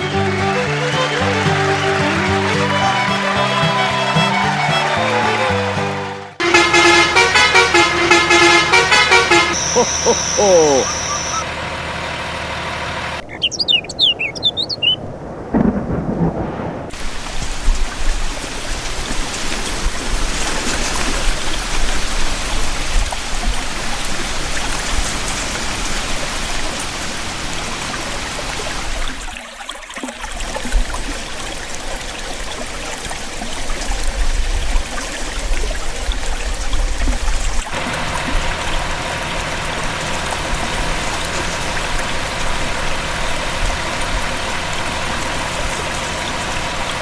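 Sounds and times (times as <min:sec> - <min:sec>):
heavy rain: 0:06.4 - 0:11.4, 0:13.0 - 0:29.0, 0:30.4 - 0:47.0
short high chirps: 0:09.5 - 0:11.4, 0:13.2 - 0:15.0
low rumble: 0:13.2 - 0:18.3.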